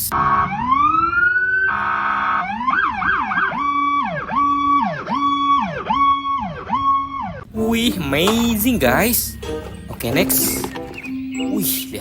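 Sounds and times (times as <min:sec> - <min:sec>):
electronic police siren: 0:00.1 - 0:07.5.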